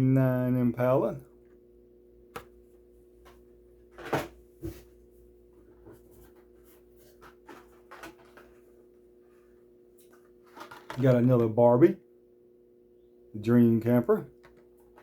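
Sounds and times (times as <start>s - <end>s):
faint steady hum: 0.0s - 15.0s
toy cars knocking and rustling: 10.4s - 11.1s.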